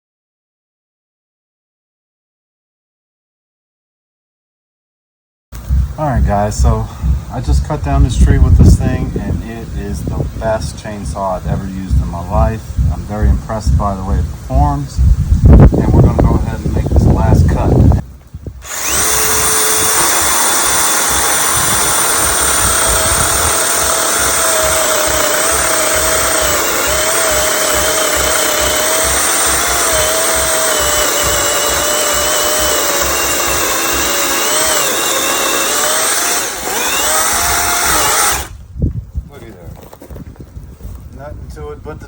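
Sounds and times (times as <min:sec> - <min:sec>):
electric chainsaw cutting wood: 0:18.6 - 0:38.6.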